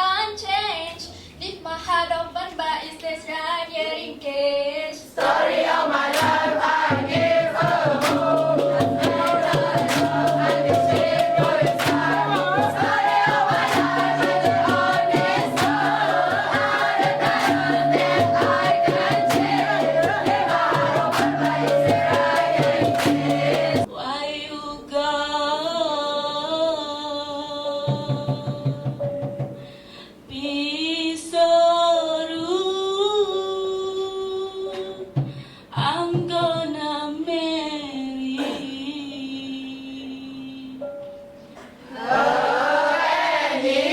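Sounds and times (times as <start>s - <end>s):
group singing: 4.9s - 24.1s, 41.9s - 43.9s
hand drum percussion: 5.2s - 23.9s, 27.9s - 29.6s.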